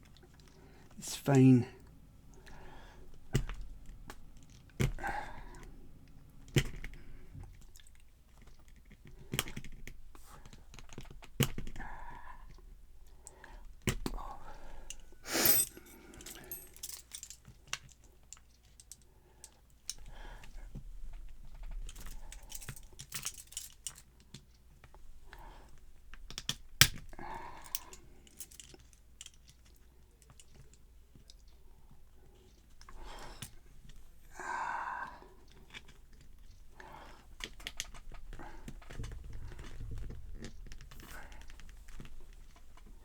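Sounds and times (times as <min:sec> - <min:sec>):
tools and metal parts rattling: 0:14.9 - 0:17.8, 0:21.9 - 0:24.1, 0:27.7 - 0:29.7.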